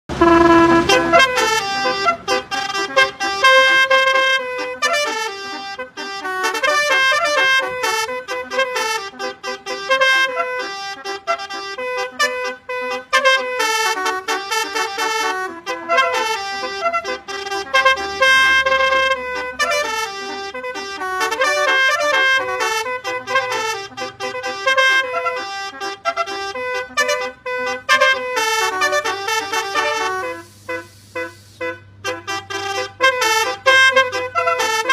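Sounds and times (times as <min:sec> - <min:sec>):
multi-tone bus horn melody: 0:00.1 - 0:34.9.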